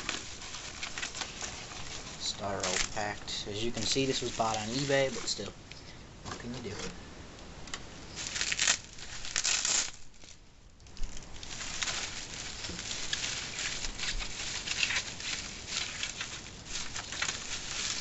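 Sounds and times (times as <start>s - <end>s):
styrofoam crinkling rustle: 0.0s - 5.6s, 8.1s - 18.0s.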